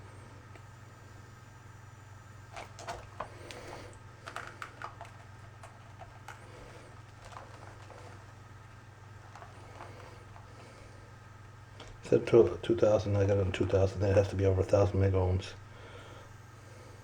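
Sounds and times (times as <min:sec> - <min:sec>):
steady low hum: 0:00.0 - 0:17.0
light clicks and taps: 0:02.5 - 0:10.9.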